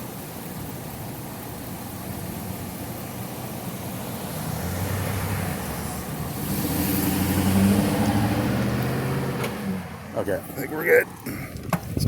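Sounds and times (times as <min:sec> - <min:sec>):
car driving past: 0:04.2 - 0:10.1.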